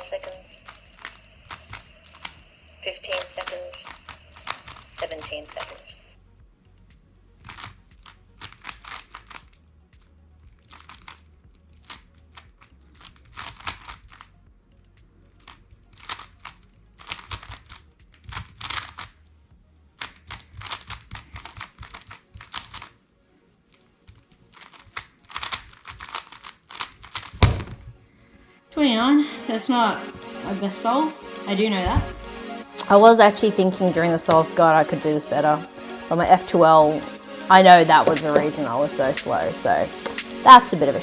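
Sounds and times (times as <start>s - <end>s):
puzzle cube clicking: 0.2s - 2.4s, 3.1s - 5.8s, 7.4s - 9.5s, 10.5s - 14.3s, 15.4s - 19.2s, 20.0s - 22.9s, 24.1s - 28.0s, 31.9s - 41.0s
low thump: 27.4s - 28.0s, 31.9s - 32.3s.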